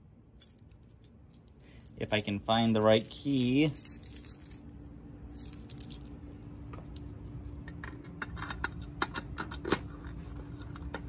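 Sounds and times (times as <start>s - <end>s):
keys clinking on a ring: 0.4s - 7.7s.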